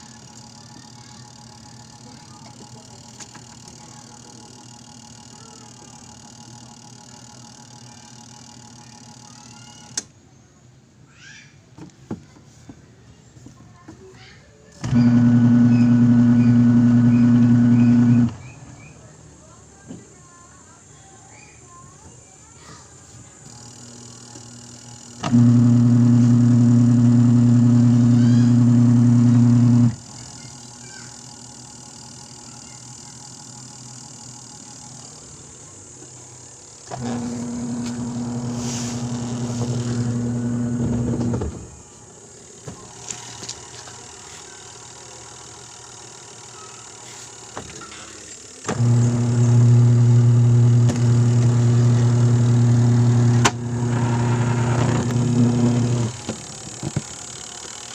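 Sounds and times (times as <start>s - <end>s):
washing machine motor humming: 14.8s - 18.5s, 24.8s - 30.2s, 36.7s - 46.6s, 48.2s - 57.9s.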